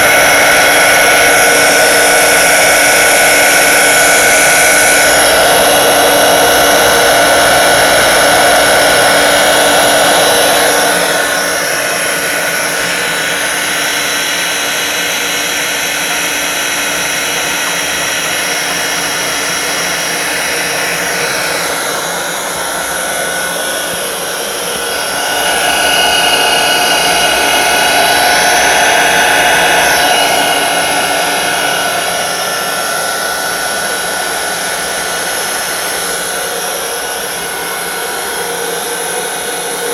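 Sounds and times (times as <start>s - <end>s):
water pump motor humming: 0.0s - 39.9s.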